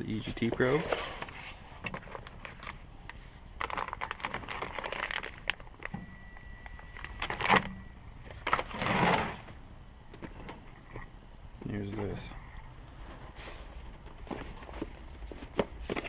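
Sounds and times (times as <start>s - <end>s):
plastic and cardboard rustling: 0.1s - 6.0s, 7.0s - 9.5s, 13.0s - 16.0s.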